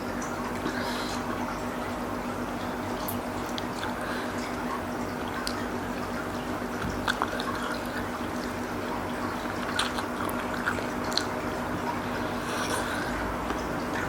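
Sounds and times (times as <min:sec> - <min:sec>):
steady background hum: 0:00.0 - 0:14.0
wet chewing: 0:03.1 - 0:04.6, 0:06.8 - 0:08.2, 0:09.4 - 0:14.0.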